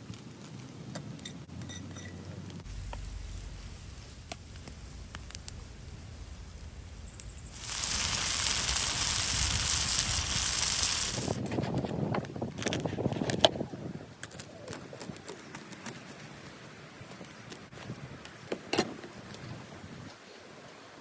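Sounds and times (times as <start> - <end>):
fire crackles: 2.3 - 11.6
loud steady hiss: 2.6 - 11.4.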